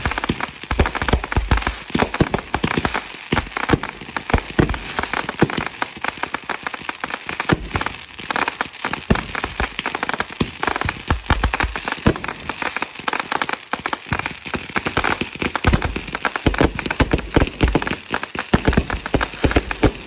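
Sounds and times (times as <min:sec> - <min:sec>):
fireworks crackling pops: 0:00.0 - 0:20.0
fireworks deep booms: 0:18.6 - 0:20.0.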